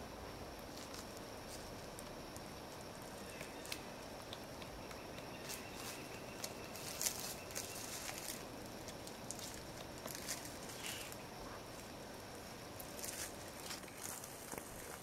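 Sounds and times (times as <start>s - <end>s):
woodpecker tapping on wood: 3.3s - 5.8s.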